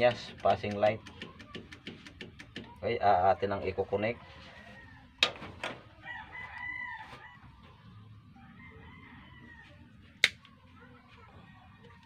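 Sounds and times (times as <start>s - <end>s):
rooster crowing: 4.2s - 5.2s, 5.9s - 7.6s, 8.3s - 9.9s.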